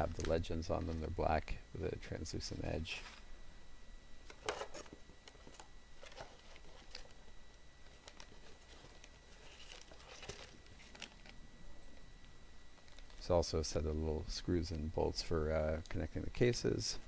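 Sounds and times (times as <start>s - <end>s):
plastic bag crinkling: 5.5s - 11.4s.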